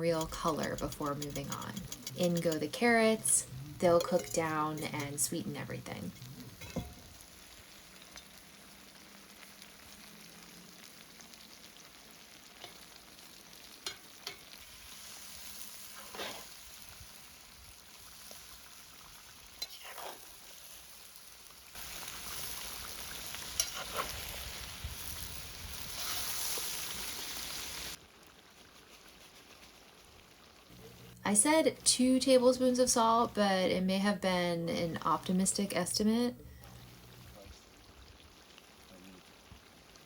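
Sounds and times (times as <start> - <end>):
stirring scrapes and knocks: 0.0 - 7.2, 15.9 - 16.5, 23.6 - 24.4
food sizzling in hot oil: 0.0 - 40.0.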